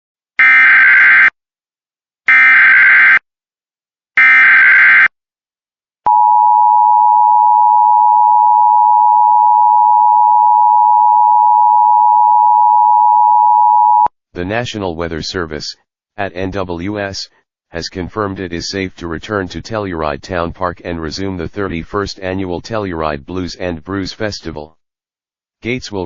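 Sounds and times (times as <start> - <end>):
loud steady attention tone: 6.1 - 14.1.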